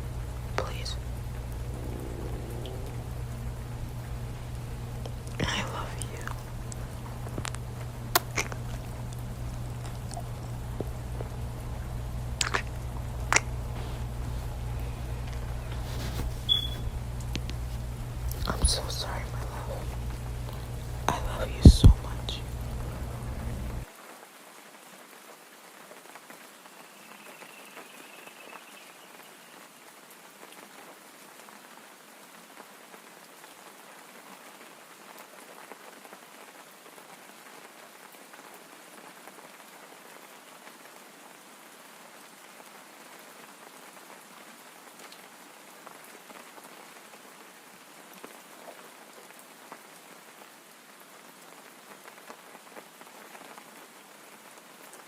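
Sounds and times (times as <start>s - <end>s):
raindrop ticks: 0.0s - 15.8s, 16.5s - 23.9s
faint rain hiss: 0.0s - 55.0s.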